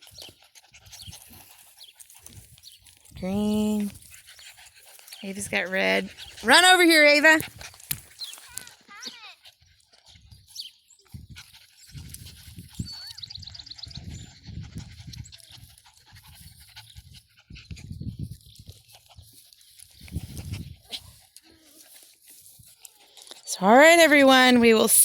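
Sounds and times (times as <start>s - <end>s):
puppies whining and yipping: 4.0s - 18.9s
low rumbling on microphone: 11.2s - 18.4s.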